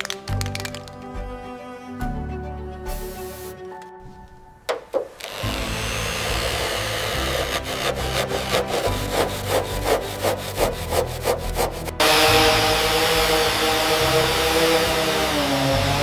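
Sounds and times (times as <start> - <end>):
hand tool scraping: 2.9 - 16.0
power tool whining: 5.1 - 10.8, 11.4 - 16.0.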